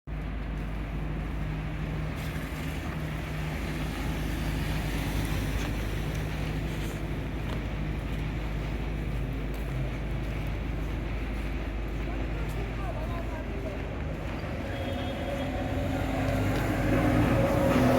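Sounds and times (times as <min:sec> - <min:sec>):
city street noise: 0:00.1 - 0:17.9
low engine hum: 0:00.1 - 0:17.9.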